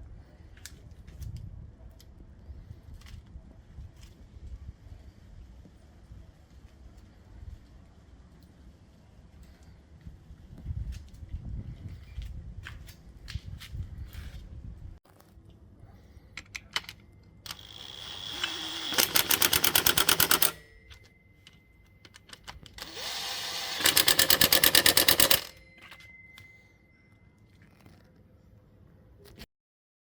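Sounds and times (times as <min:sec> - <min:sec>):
impact wrench hammering: 0:17.5 - 0:20.6, 0:22.8 - 0:25.6.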